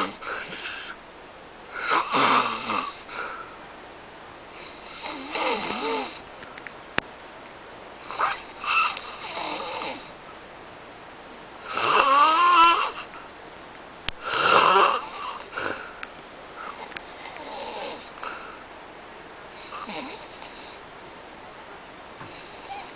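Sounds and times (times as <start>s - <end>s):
man snoring heavily: 0.0s - 1.0s, 1.7s - 3.4s, 4.6s - 6.2s, 8.0s - 10.1s, 11.6s - 13.1s, 14.2s - 15.9s, 16.7s - 18.4s, 19.6s - 20.8s.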